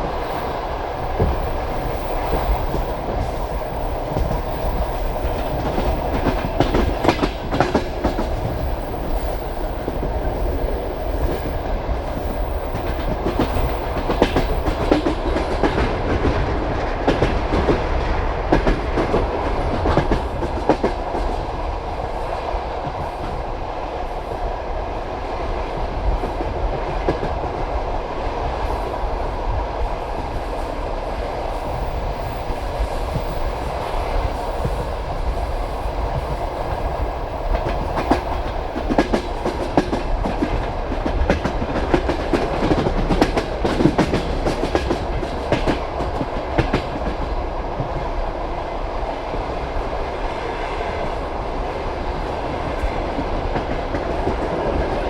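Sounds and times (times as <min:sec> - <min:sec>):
rumble of train wheels on rail: 0:00.0 - 0:55.0
clickety-clack of wheels on joints: 0:01.1 - 0:21.4, 0:36.1 - 0:48.0.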